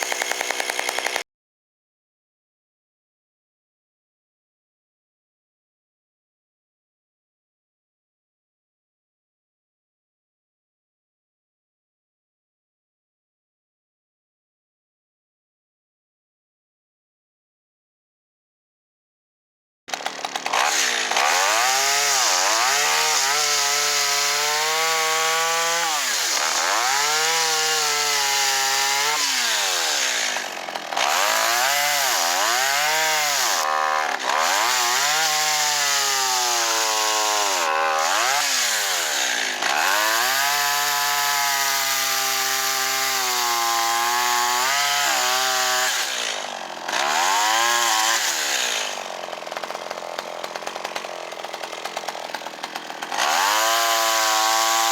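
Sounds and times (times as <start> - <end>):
chainsaw revving: 0.0 - 1.2, 19.9 - 54.9.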